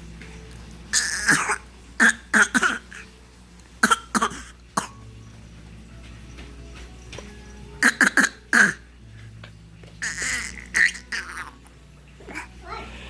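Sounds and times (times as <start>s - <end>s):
fake coughing: 1.0s - 3.0s, 3.8s - 5.0s, 7.8s - 8.9s.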